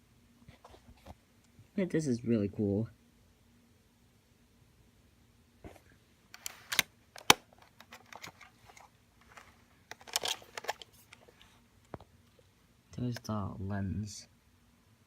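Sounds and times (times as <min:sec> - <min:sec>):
faint steady hum: 0:00.0 - 0:15.0
camcorder handling clicks: 0:06.4 - 0:08.4, 0:09.9 - 0:10.8.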